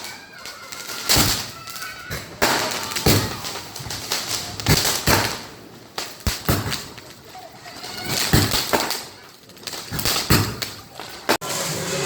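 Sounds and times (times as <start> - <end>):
firecrackers banging: 0.0 - 12.0.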